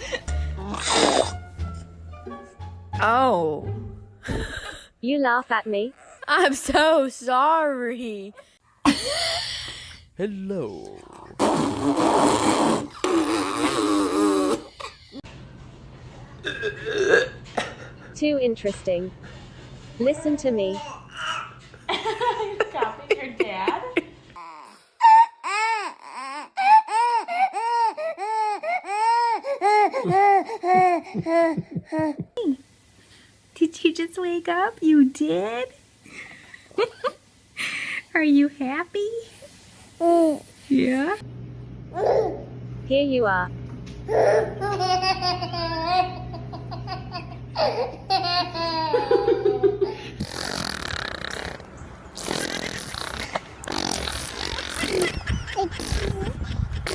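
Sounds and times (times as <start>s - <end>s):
baby laughing: 23.8s - 32.4s, 42.0s - 42.4s, 44.1s - 50.4s, 52.6s - 56.9s.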